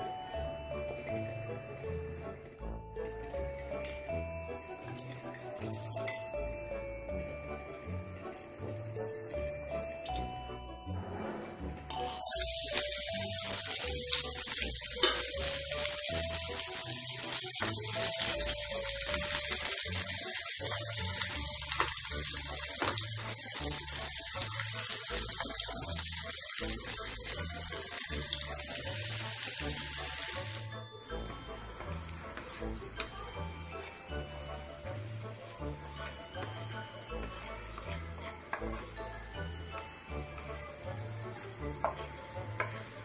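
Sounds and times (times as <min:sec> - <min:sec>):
tap water running into sink: 0:12.2 - 0:31.3
background music with beat: 0:29.6 - 0:43.0.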